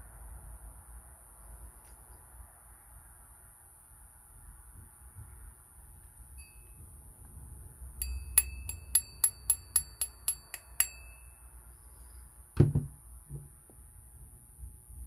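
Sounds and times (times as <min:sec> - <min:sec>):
spinning reel metallic clicks: 0:08.0 - 0:11.2
thump: 0:12.6 - 0:13.5.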